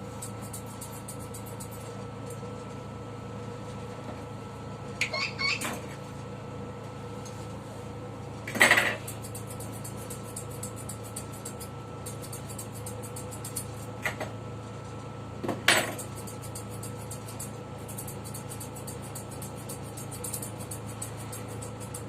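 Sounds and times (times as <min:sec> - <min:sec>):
electric hair clippers buzzing: 0:08.6 - 0:14.1, 0:15.8 - 0:22.0.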